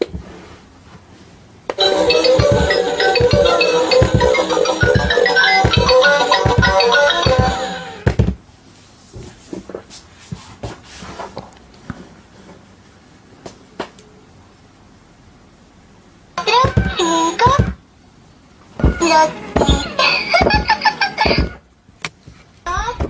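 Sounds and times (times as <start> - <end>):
bright background music: 1.8 - 8.0.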